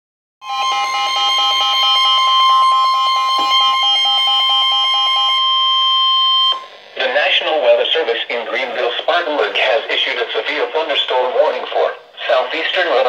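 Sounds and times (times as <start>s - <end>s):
rapidly pulsing beep: 0.4s - 6.7s
loud high alarm tone: 0.4s - 6.8s.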